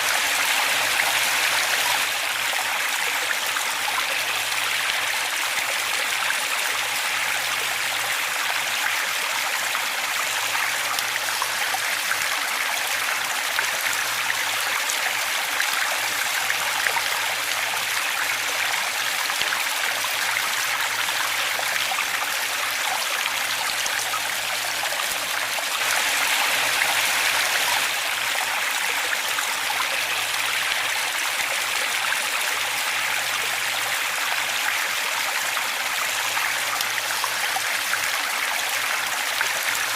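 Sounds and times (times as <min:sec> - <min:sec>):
waterfall rushing: 0:24.4 - 0:29.3.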